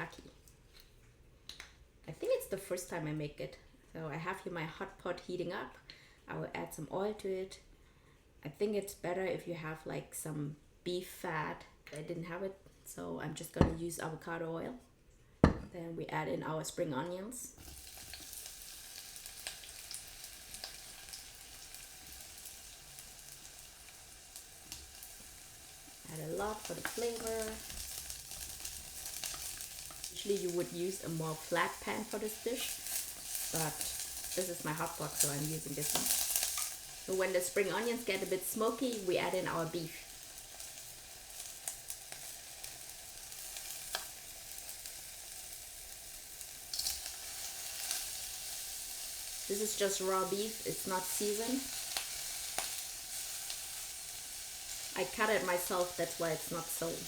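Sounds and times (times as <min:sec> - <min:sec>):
oil crackling and popping: 0:17.6 - 0:57.0
onions sizzling in oil: 0:17.6 - 0:57.0.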